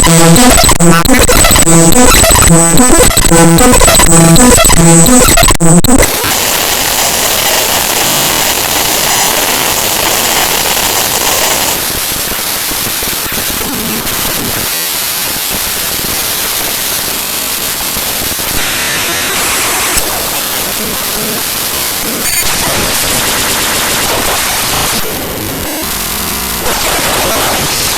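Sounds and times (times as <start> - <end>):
harsh static-like noise: 0.0 - 27.9.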